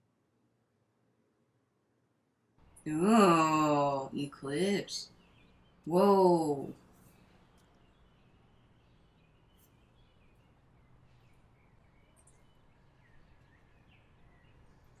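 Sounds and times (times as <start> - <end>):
faint high chirps: 5.0 - 15.0.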